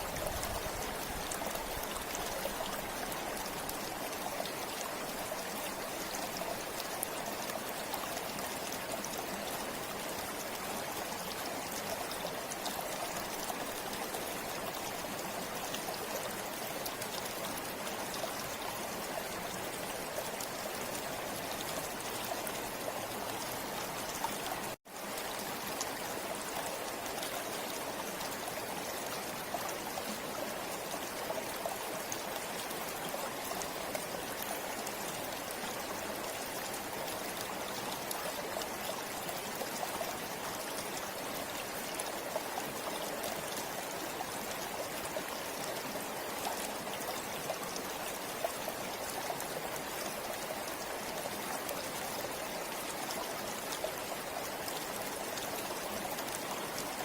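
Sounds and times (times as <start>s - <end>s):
river water flowing over rocks: 0.0s - 57.0s.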